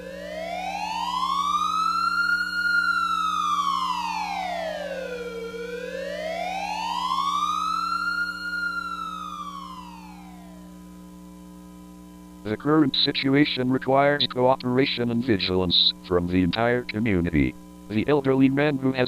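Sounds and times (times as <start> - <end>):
wailing alert siren: 0.0 - 10.9
steady low hum: 0.0 - 19.0.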